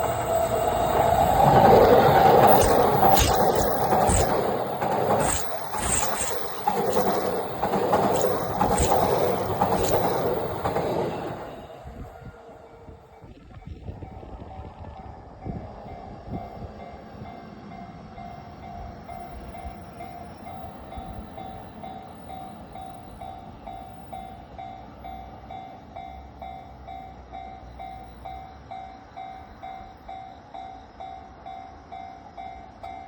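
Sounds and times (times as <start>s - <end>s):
electric train rumbling past: 0.0s - 33.0s.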